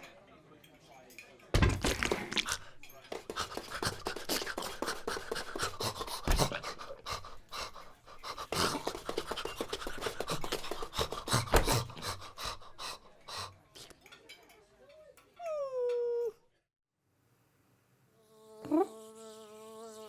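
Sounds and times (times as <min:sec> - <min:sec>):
scratchy scuffling: 0:01.6 - 0:12.0
heavy thumps: 0:01.6 - 0:12.7
breathy panting: 0:01.8 - 0:13.6.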